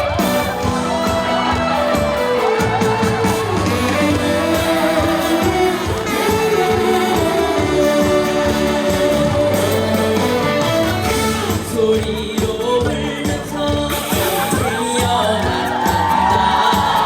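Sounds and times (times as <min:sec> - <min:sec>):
trot song instrumental: 0:00.0 - 0:17.0.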